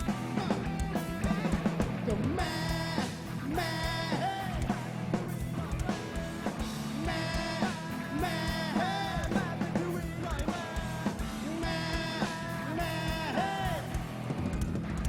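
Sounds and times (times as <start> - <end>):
guitar: 0.0 - 15.0
live rock band playing: 0.0 - 15.0.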